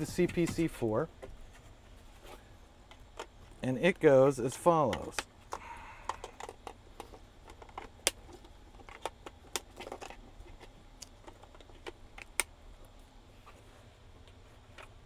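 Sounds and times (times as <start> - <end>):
plastic connectors clicking and rattling: 3.9 - 12.5.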